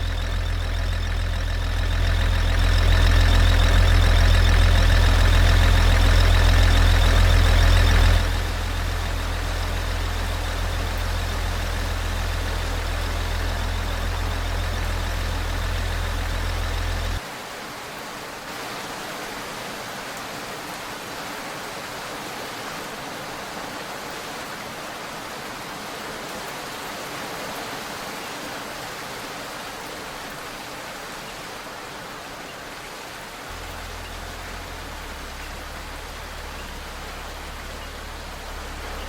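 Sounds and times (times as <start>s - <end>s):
low rumble: 0.0s - 17.2s, 33.5s - 39.0s.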